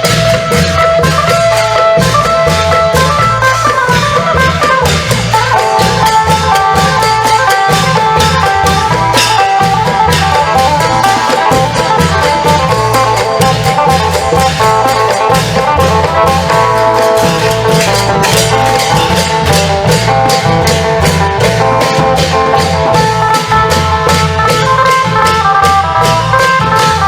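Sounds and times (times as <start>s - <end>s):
long drums: 0.0s - 27.0s
lute melody: 0.0s - 27.0s.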